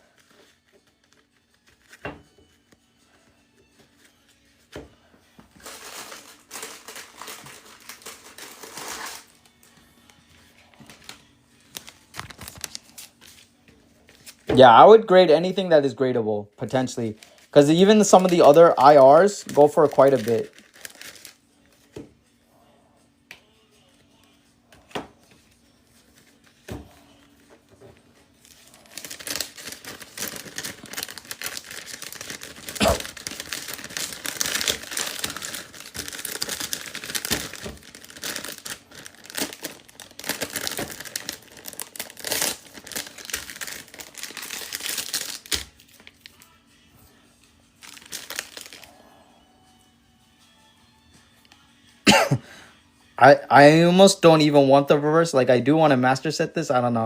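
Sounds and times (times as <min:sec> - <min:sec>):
plastic packaging rustling: 0:05.5 - 0:09.6, 0:10.6 - 0:15.4, 0:16.6 - 0:21.4, 0:26.0 - 0:46.4, 0:47.8 - 0:49.0.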